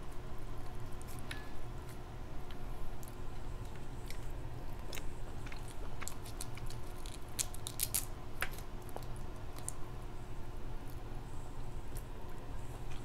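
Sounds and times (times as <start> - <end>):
wet chewing and biting: 3.0 - 9.8
crab shell clicks and cracks: 5.6 - 9.8.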